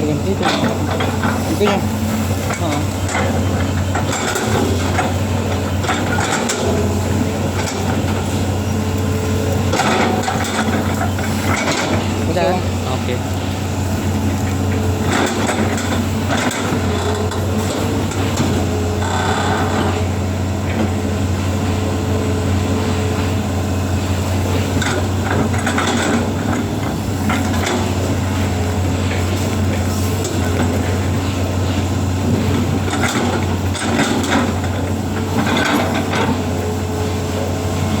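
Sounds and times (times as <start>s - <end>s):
excavator diesel engine running: 0.0s - 38.0s.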